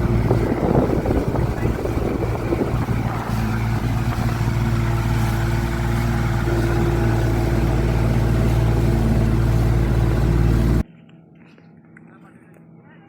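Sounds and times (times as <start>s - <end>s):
motorboat engine running: 0.0s - 10.8s.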